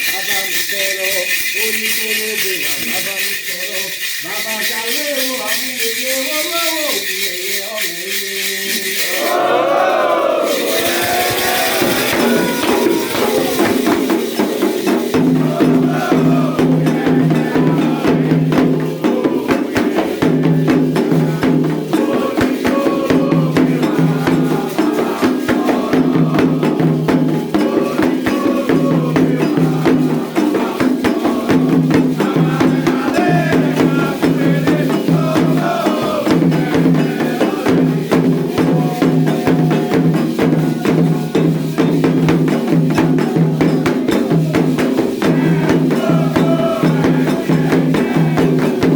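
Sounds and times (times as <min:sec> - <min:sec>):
rattle: 0:00.0 - 0:09.4, 0:10.5 - 0:15.4
sharp struck percussion: 0:00.0 - 0:48.9
voices singing: 0:00.0 - 0:48.9
drums playing low rhythm: 0:10.6 - 0:48.9.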